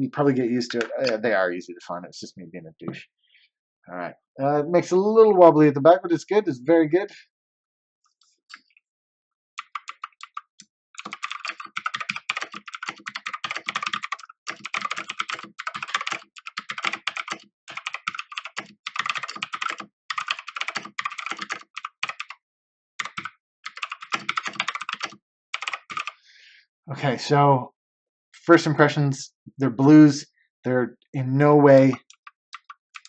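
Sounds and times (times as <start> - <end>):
mechanical keyboard typing clicks: 9.6 - 22.3, 23.0 - 26.1, 31.9 - 33.0.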